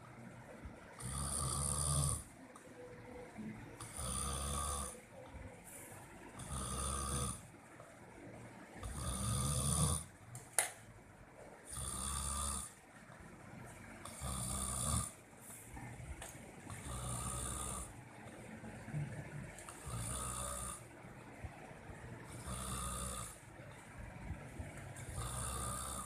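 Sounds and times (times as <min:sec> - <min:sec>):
person snoring: 0:01.0 - 0:02.3, 0:03.8 - 0:05.0, 0:06.4 - 0:07.4, 0:08.8 - 0:10.1, 0:11.7 - 0:12.8, 0:14.0 - 0:15.2, 0:16.7 - 0:18.0, 0:19.7 - 0:20.8, 0:22.3 - 0:23.4, 0:25.0 - 0:26.0.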